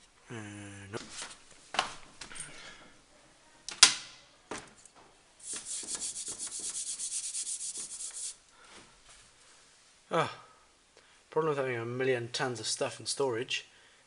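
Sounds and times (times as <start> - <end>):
rapid rubbing or scraping: 5.4 - 8.4.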